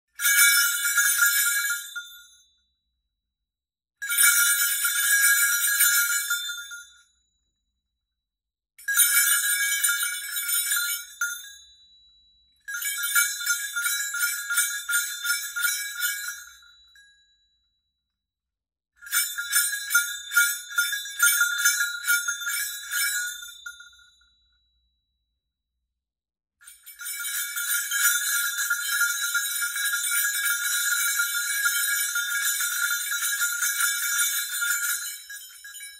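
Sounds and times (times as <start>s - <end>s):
muted bells jingling: 27.0s - 35.9s.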